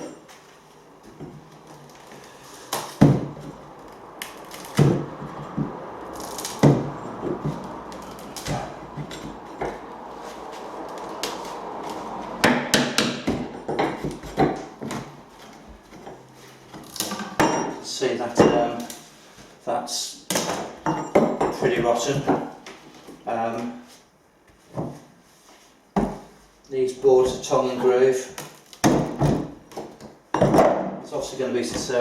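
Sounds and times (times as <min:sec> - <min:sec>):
tools knocking on floorboards: 0:12.4 - 0:15.2, 0:28.8 - 0:30.9.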